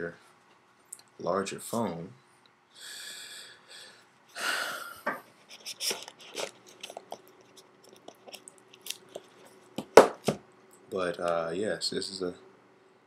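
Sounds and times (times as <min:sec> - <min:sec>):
packaging rustling: 0:05.5 - 0:10.4.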